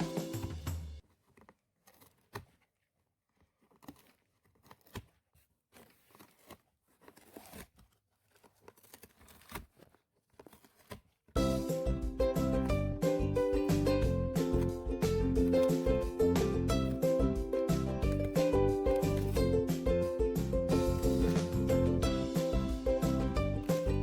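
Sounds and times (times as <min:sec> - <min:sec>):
music: 0:00.0 - 0:01.0, 0:11.4 - 0:24.0
cat chewing cardboard: 0:01.1 - 0:11.3.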